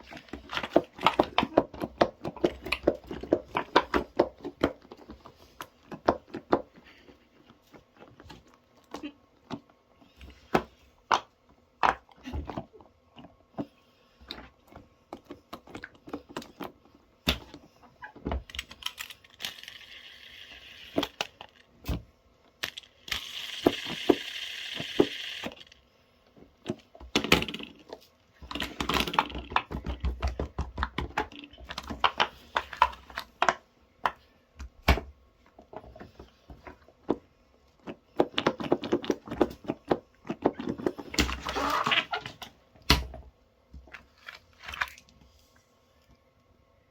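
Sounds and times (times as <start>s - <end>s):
plastic toys clicking and tapping: 0.0s - 8.5s, 18.4s - 21.7s, 22.6s - 25.8s, 26.6s - 34.2s, 37.8s - 41.9s.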